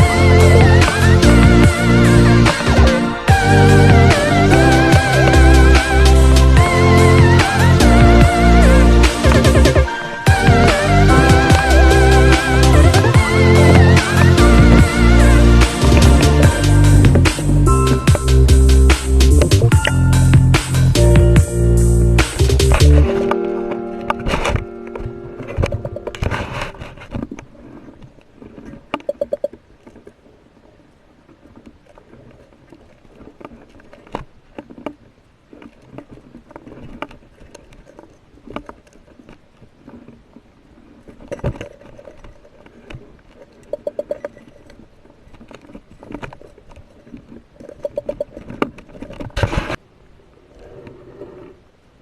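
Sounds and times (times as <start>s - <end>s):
underwater clicks and knocks: 10.4s - 18.3s, 22.3s - 30.1s, 32.7s - 40.4s, 41.1s - 49.8s.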